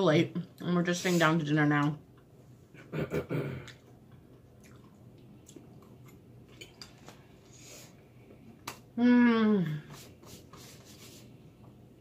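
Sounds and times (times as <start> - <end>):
person chewing food: 3.6 - 7.5.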